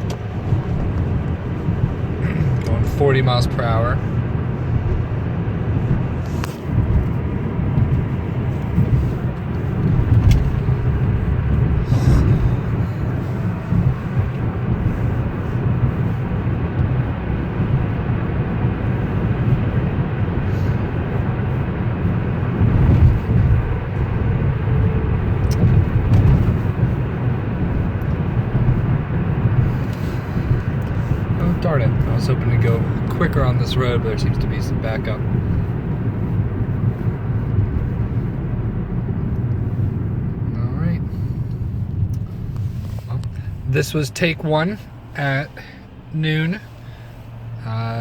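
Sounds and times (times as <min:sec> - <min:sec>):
car cabin engine and road noise: 0:00.0 - 0:48.0.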